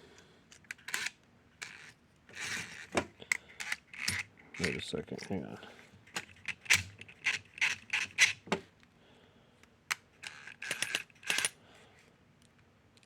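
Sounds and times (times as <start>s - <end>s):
small hard parts clicking: 0.5s - 5.4s, 6.1s - 8.4s, 9.9s - 11.6s.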